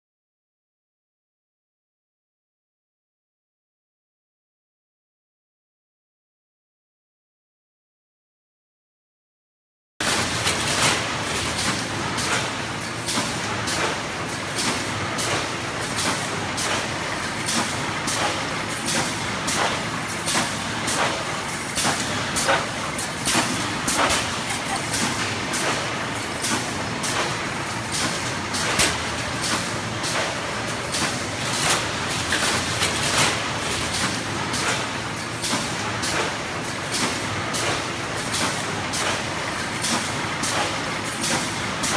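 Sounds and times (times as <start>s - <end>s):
steady machine noise: 10.2s - 36.0s.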